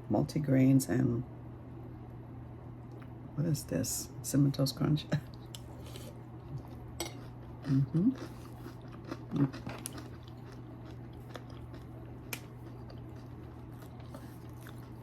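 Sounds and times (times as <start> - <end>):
steady low hum: 0.0 - 15.0
crunching and chewing cereal: 5.5 - 15.0.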